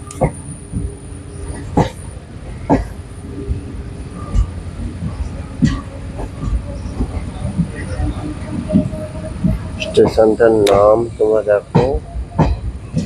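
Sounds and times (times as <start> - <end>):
train rumbling: 0.0 - 13.0
sharp knocks: 11.7 - 13.0.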